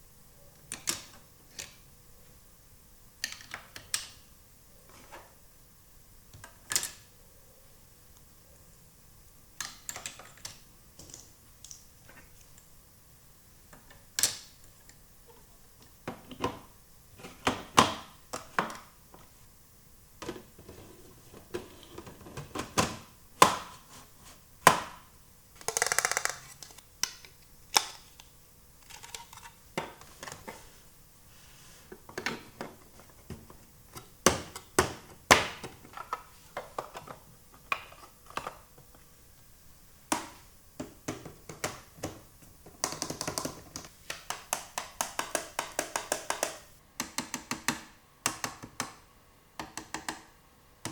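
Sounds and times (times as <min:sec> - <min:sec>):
plastic pieces rattling: 0:25.6 - 0:26.8
plastic toy pieces clicking: 0:25.6 - 0:28.1.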